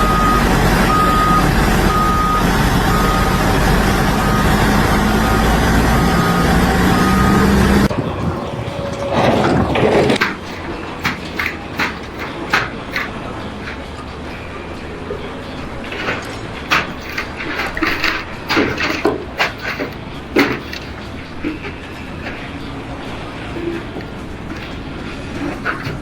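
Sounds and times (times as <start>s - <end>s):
reversing alarm beeping: 0.0s - 10.0s
engine running: 0.0s - 26.0s.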